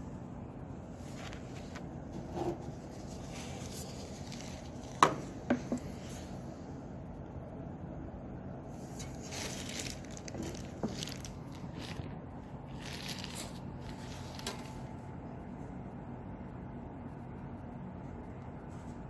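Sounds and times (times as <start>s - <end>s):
steady low hum: 0.0s - 19.0s
crinkling rustling handling noises: 0.9s - 6.5s, 8.8s - 15.0s.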